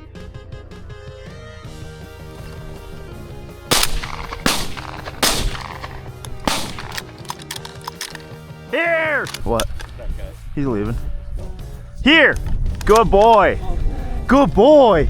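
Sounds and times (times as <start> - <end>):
shotgun shots: 3.7 - 7.4.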